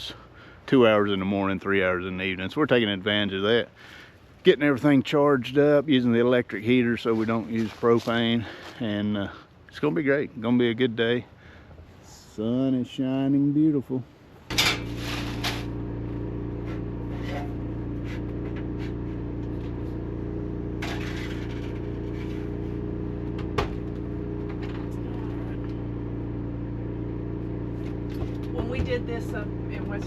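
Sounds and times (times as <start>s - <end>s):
portable generator running: 14.5s - 30.0s.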